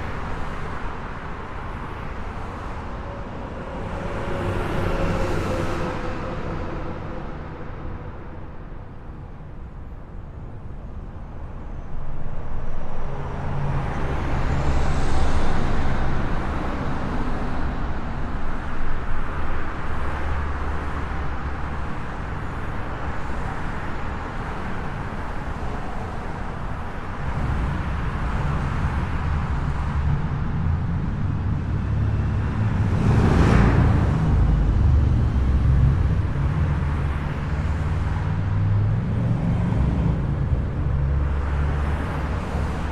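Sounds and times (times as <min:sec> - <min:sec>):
highway traffic: 0:00.0 - 0:42.9
loud vehicle passing: 0:02.4 - 0:09.1.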